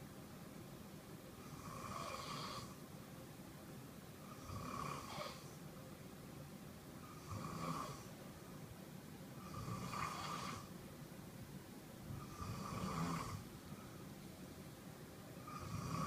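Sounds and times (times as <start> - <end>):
man snoring: 1.4 - 2.8, 4.3 - 5.5, 7.0 - 8.1, 9.4 - 10.7, 12.2 - 13.4, 15.4 - 16.0.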